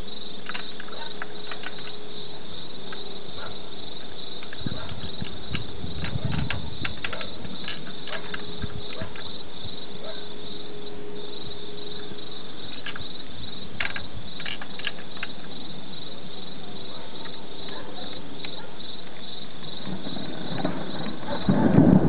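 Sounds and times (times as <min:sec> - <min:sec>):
cricket chirping: 0:00.0 - 0:22.0
rain hissing: 0:19.4 - 0:22.0.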